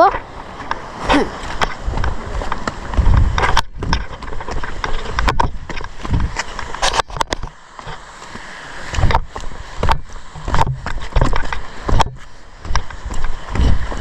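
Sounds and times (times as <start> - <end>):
steady rushing noise: 0.0 - 14.0
heavy footsteps walking: 1.4 - 7.0, 9.0 - 14.0.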